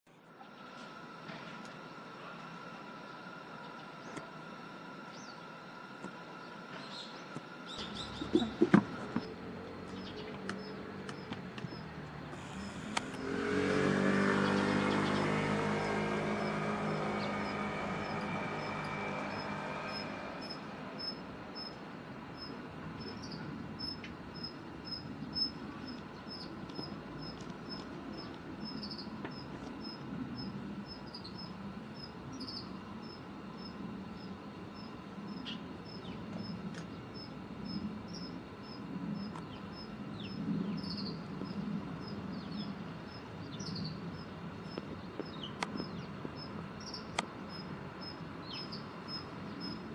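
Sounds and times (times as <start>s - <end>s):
high falling bird calls: 6.3s - 21.8s
car passing: 7.8s - 21.5s
insect chirping: 14.3s - 49.9s.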